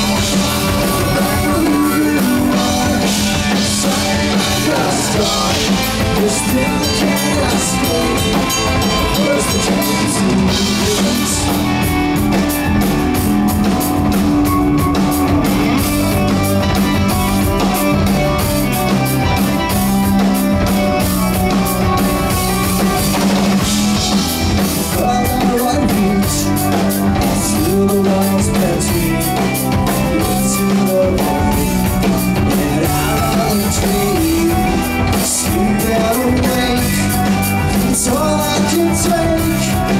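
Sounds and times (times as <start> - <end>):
live rock band playing: 0.0 - 39.9.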